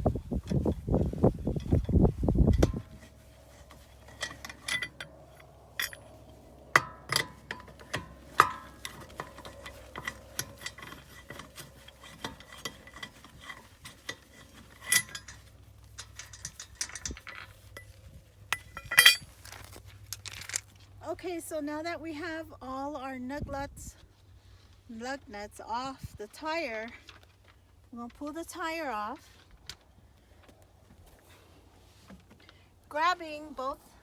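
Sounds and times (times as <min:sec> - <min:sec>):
lug wrench clinking on lug nuts: 0:00.4 - 0:20.7.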